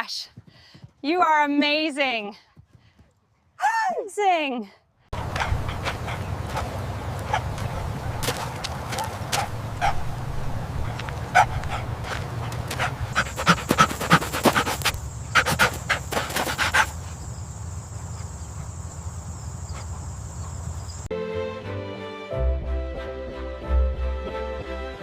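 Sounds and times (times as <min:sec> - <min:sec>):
dog panting: 0:05.2 - 0:06.6, 0:10.8 - 0:17.2
music: 0:21.1 - 0:25.0.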